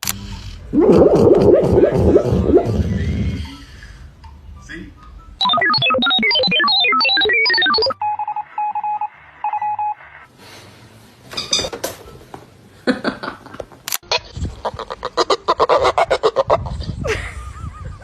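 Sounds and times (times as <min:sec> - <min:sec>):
phone ringtone melody: 0:05.1 - 0:10.0
short beeping tones: 0:05.1 - 0:10.0.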